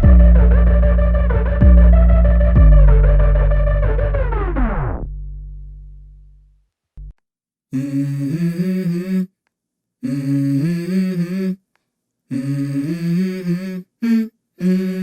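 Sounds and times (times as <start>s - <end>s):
hummed vocal phrases: 7.7s - 9.4s, 10.0s - 11.6s, 12.3s - 15.0s.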